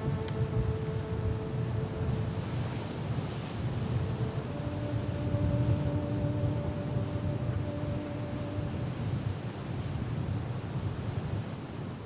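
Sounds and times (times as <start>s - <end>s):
held low tone: 0.0s - 9.5s
rumbling wind: 0.0s - 11.9s
ocean surf: 0.0s - 12.0s
wind on microphone: 0.0s - 12.0s.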